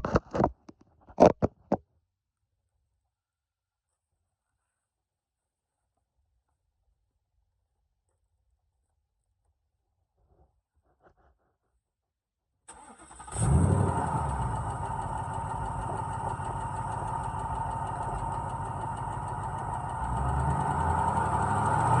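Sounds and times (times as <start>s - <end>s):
car engine starting and idling: 12.7s - 22.0s.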